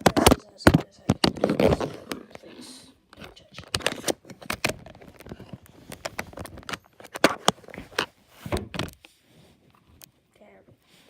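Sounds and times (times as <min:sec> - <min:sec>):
objects clicking and knocking: 0:00.0 - 0:02.4.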